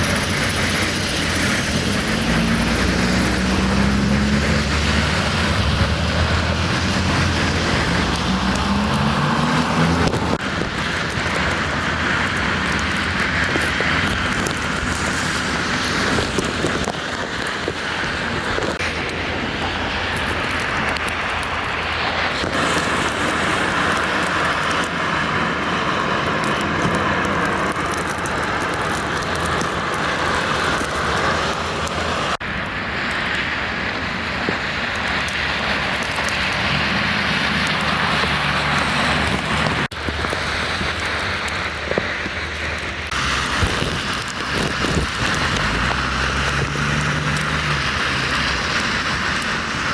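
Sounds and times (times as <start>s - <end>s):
loud rushing noise: 0.0s - 25.2s.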